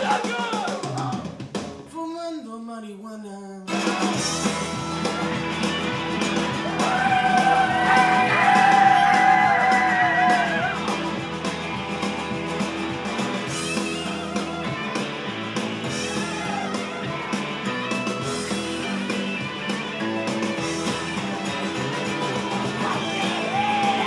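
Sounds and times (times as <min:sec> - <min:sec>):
person singing: 0:01.9 - 0:04.2
rock band playing: 0:03.7 - 0:24.0.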